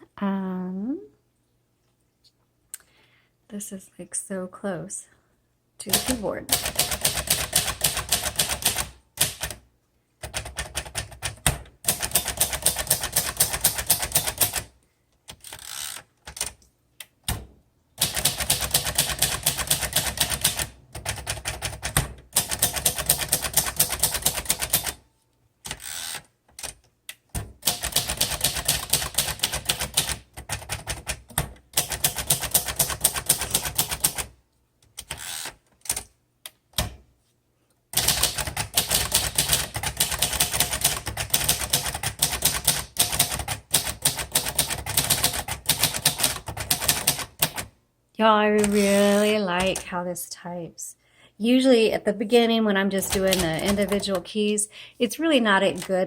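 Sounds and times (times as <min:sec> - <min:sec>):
manual typewriter typing: 0:05.8 - 0:09.6, 0:10.2 - 0:16.6, 0:18.0 - 0:25.0, 0:25.7 - 0:34.3, 0:37.9 - 0:47.7, 0:48.6 - 0:49.9, 0:52.9 - 0:54.5.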